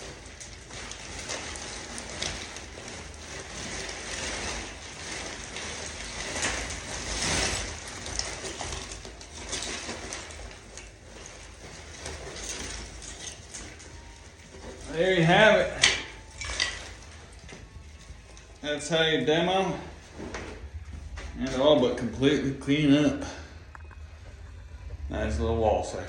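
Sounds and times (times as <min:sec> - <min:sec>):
plaster debris rattling: 0:00.0 - 0:18.6.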